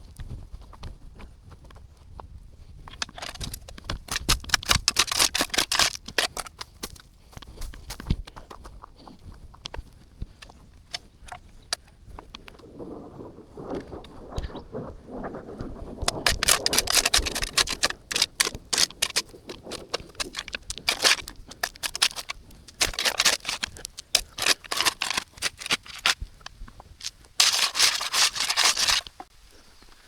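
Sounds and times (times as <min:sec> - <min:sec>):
shovel scraping in dirt: 0:03.0 - 0:07.0, 0:16.0 - 0:29.3.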